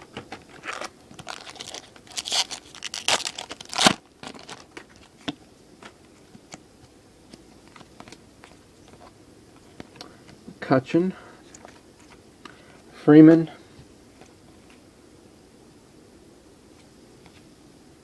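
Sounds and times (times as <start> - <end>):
foil wrapper tearing and crinkling: 0.5 - 5.2.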